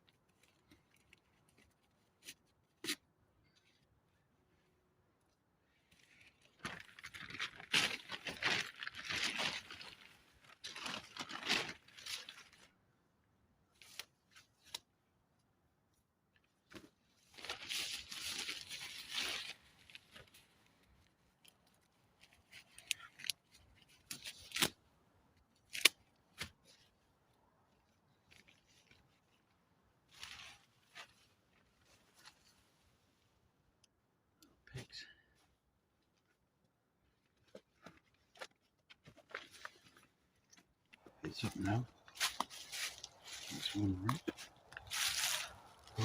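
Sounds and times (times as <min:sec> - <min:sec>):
tent fabric rustling: 0:27.8 - 0:33.1, 0:41.5 - 0:46.0.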